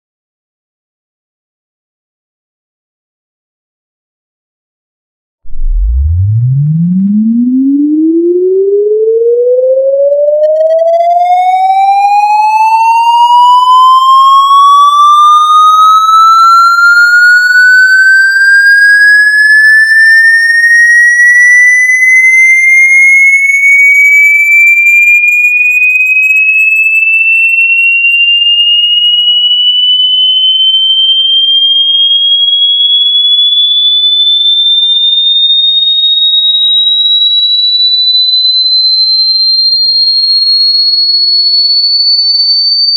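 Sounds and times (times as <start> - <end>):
electronic tone sweeping upward: 5.5 - 24.9, 27.9 - 32.1.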